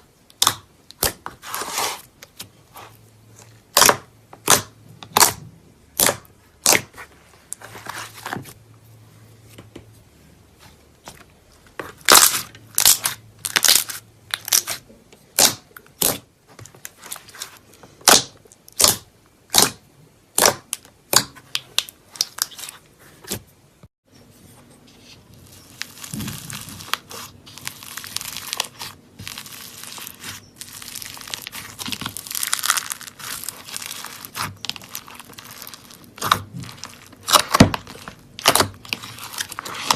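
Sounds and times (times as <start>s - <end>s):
slime popping and crackling: 12.0s - 16.2s, 25.4s - 39.9s.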